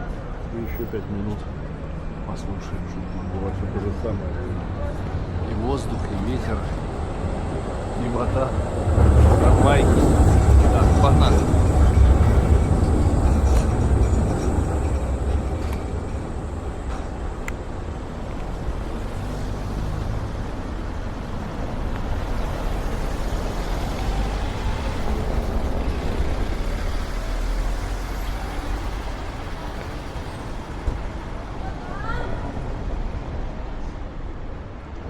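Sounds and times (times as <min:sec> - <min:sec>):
road traffic noise: 0:00.0 - 0:35.0
deep wind rumble: 0:04.5 - 0:35.0.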